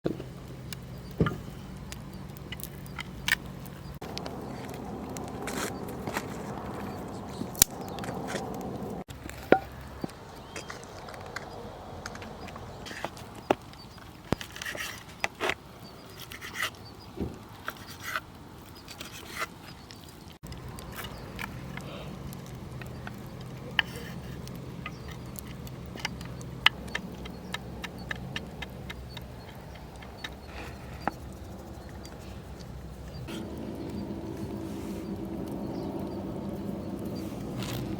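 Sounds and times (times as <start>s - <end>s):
campfire crackling: 0.1s - 37.9s
cooking gear scraping and clinking: 20.4s - 35.6s.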